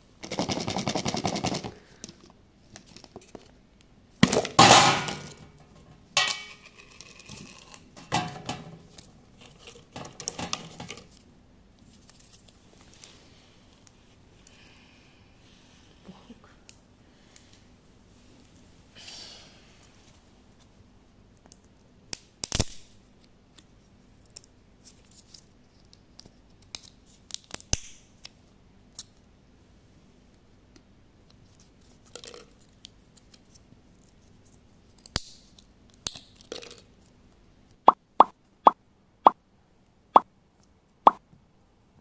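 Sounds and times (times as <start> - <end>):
crinkly rustles: 8.8 - 14.2.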